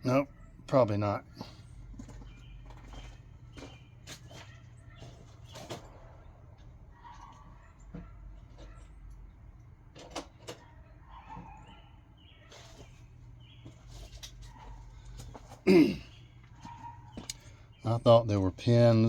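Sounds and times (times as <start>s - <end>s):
metal parts squeak: 1.4s - 6.0s.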